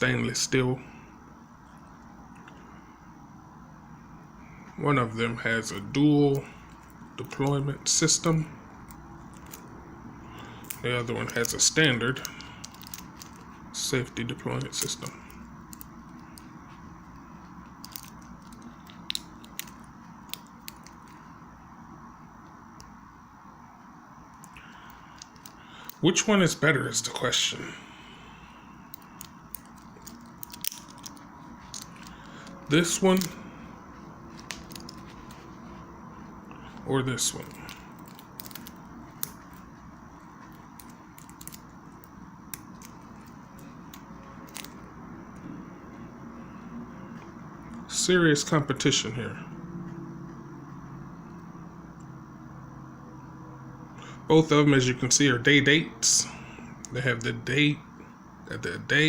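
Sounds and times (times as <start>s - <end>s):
steady low hum: 0.0s - 59.0s
watches clicking when handled: 10.6s - 13.6s, 14.5s - 21.2s, 24.4s - 26.0s, 28.9s - 33.4s, 34.3s - 35.6s, 37.4s - 39.7s, 40.4s - 44.8s
wristwatch bracelets clicking and tapping: 17.8s - 21.2s, 37.4s - 39.7s, 40.5s - 44.7s.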